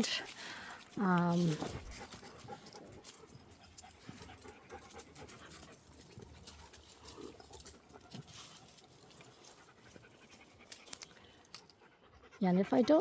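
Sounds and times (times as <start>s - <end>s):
faint ticks and rustles: 0.0s - 13.0s
dog panting: 0.1s - 13.0s.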